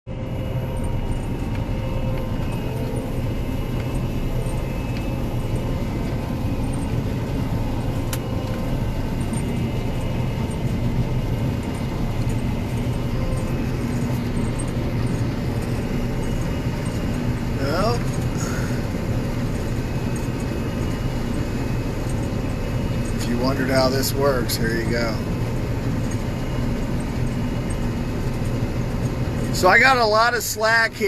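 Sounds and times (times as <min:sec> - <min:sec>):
combine harvester running: 0:00.1 - 0:31.0.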